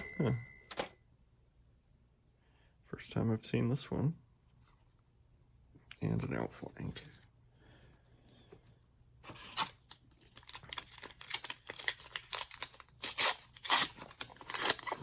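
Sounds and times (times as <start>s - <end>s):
foil wrapper tearing and crinkling: 9.4s - 15.0s.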